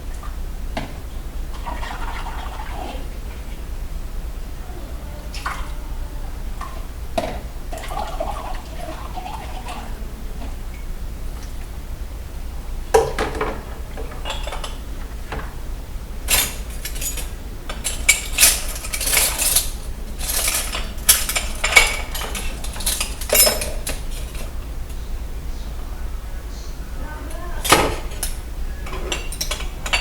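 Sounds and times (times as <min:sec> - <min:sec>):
dishes and cutlery clinking: 0:13.0 - 0:15.5, 0:16.3 - 0:24.5, 0:27.6 - 0:30.0.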